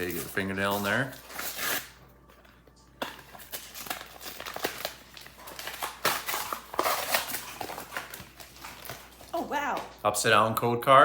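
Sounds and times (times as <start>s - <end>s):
plastic packaging crinkling: 3.0s - 9.4s.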